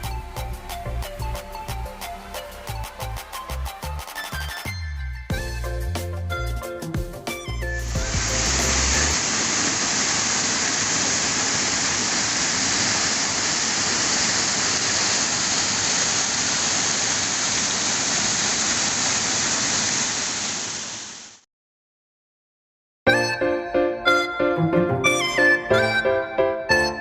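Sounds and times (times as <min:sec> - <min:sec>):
water rushing over waterfall: 0:08.0 - 0:21.4.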